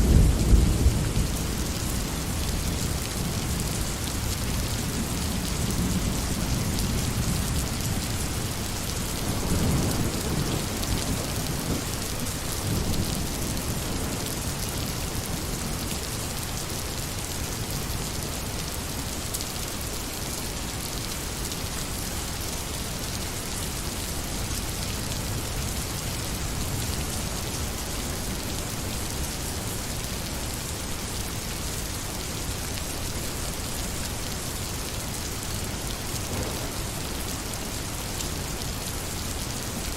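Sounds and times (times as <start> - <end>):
steady rain: 0.0 - 39.9
thunder rumbling: 36.2 - 37.5.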